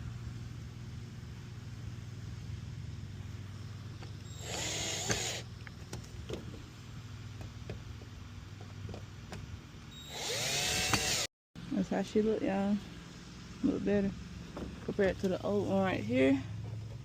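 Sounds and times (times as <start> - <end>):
steady low hum: 0.0 - 17.0
power drill whirring: 4.2 - 5.5, 9.9 - 11.3.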